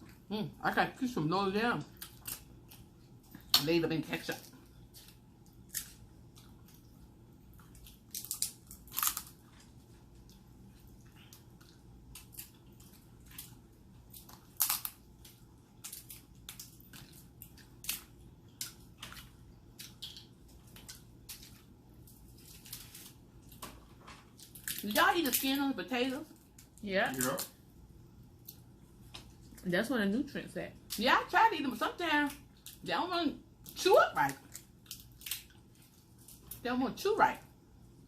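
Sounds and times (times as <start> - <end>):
chewing crunches and smacks: 1.8 - 3.7, 4.4 - 24.9, 33.6 - 36.6.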